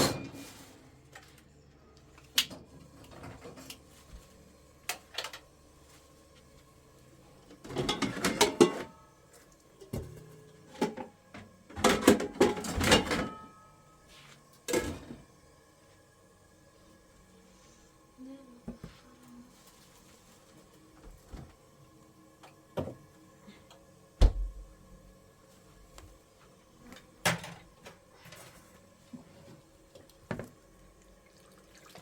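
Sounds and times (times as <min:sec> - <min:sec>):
dishes rattling: 0:07.7 - 0:09.0.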